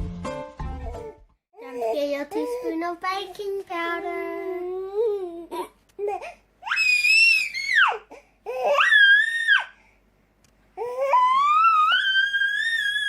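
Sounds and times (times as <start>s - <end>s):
child squealing: 6.6s - 9.8s, 10.9s - 13.0s.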